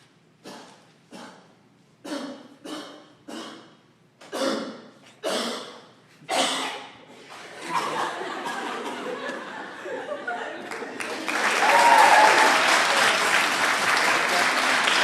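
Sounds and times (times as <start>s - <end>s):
person imitating dog cough: 2.1s - 3.7s, 4.3s - 6.9s.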